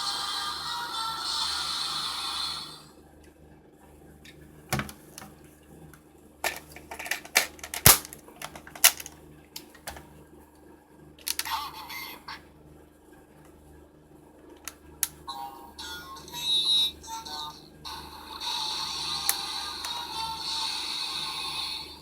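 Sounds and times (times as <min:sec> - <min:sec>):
plastic toy clicks and snaps: 0:06.4 - 0:10.0, 0:11.2 - 0:11.5
electronic toy sound effect: 0:15.3 - 0:22.0.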